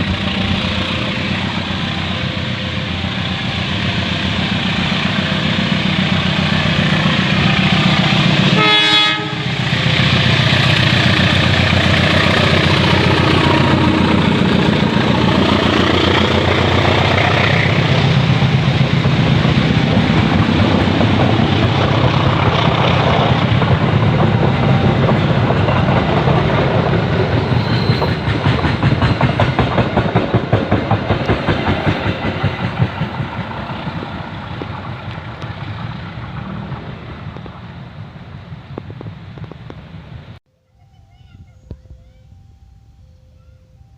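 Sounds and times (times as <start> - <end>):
train wheels clacking on rails: 0.0 - 40.1
locomotive engine running: 0.0 - 40.4.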